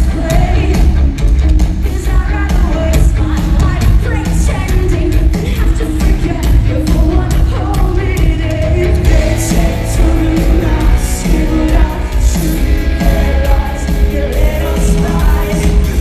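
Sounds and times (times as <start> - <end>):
heavy bass and kick drum: 0.0 - 16.0
live rock band playing: 0.0 - 16.0
person singing: 1.8 - 16.0.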